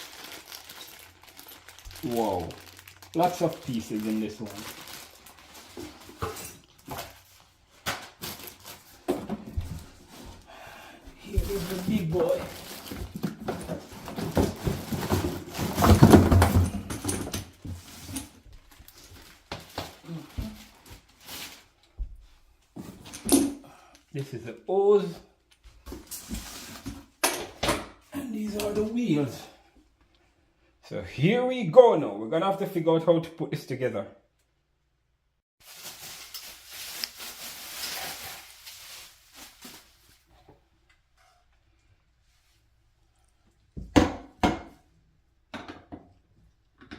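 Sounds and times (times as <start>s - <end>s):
packaging rustling: 0.0s - 10.5s, 11.2s - 16.9s, 35.6s - 40.3s.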